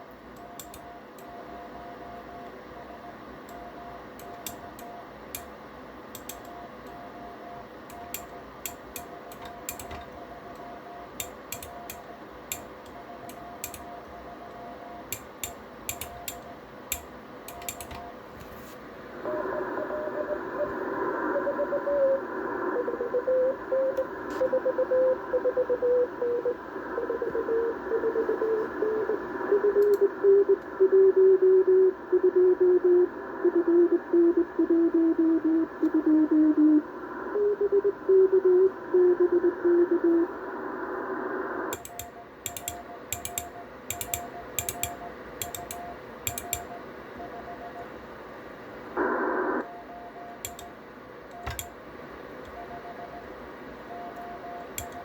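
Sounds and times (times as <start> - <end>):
morse code signal tone: 0.0 - 5.2, 6.3 - 16.7, 19.3 - 40.4, 41.5 - 47.9, 49.0 - 50.8, 52.5 - 55.0
morse keying sidetone: 0.0 - 5.6, 6.2 - 18.2, 41.7 - 47.9, 49.6 - 51.7, 52.4 - 55.0
receiver hiss: 0.0 - 55.0.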